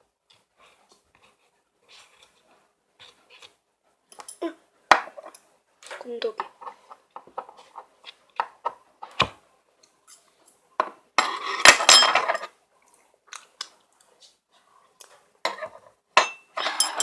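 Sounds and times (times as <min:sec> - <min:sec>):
utensils clinking against a bowl: 0:11.2 - 0:12.5, 0:16.2 - 0:17.0.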